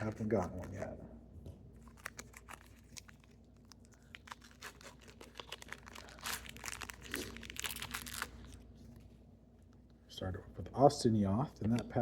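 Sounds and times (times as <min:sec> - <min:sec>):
wrapper crinkling: 0:01.8 - 0:08.6.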